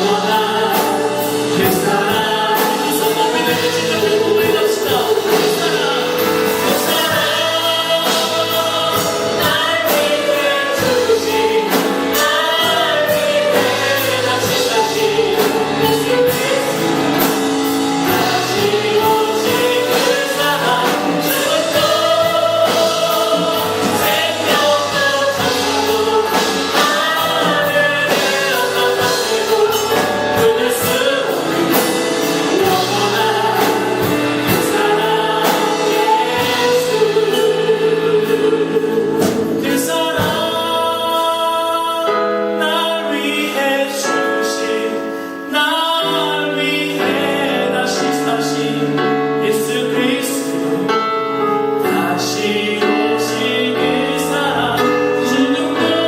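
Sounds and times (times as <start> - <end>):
band accompaniment with steady beat: 0.0 - 56.0
congregation singing a hymn: 0.0 - 56.0.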